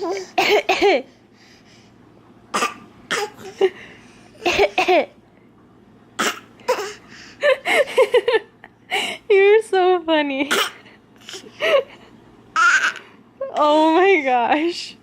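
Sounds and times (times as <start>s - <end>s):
baby fake coughing: 0.1s - 1.0s, 2.5s - 3.6s, 4.4s - 5.1s, 6.2s - 7.0s, 10.5s - 11.4s.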